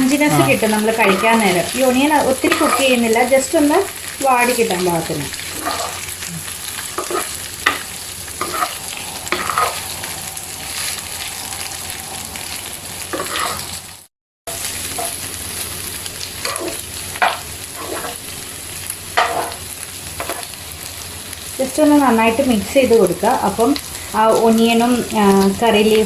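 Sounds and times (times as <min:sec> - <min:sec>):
food sizzling in a pan: 0:00.0 - 0:26.0
utensil scraping a pan: 0:00.5 - 0:03.1, 0:04.4 - 0:06.2, 0:06.8 - 0:10.0, 0:13.1 - 0:13.7, 0:16.4 - 0:18.3, 0:19.2 - 0:19.6, 0:20.2 - 0:20.6.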